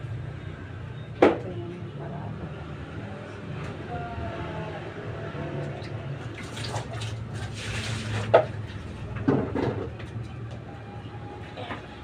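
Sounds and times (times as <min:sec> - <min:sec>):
knocking and scraping object: 0:07.6 - 0:10.0.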